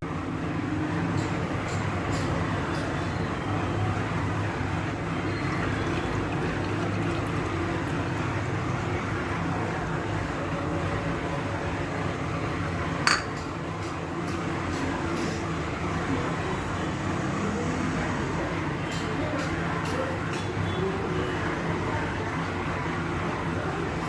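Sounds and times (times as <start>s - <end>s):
steady liquid noise: 3.9s - 11.3s.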